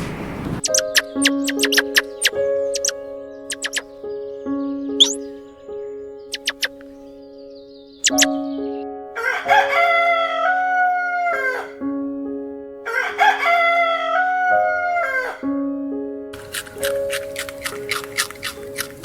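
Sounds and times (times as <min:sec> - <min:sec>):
soft background music: 0:00.6 - 0:19.0
rooster crowing: 0:09.2 - 0:11.8, 0:12.8 - 0:15.5.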